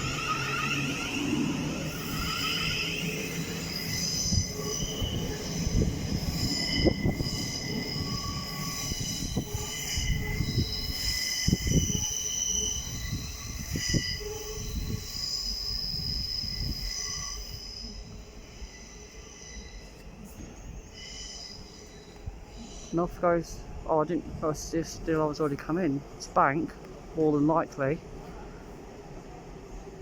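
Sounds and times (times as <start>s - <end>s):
train wheel squeal: 0.0s - 23.4s
train rumble: 0.0s - 30.0s.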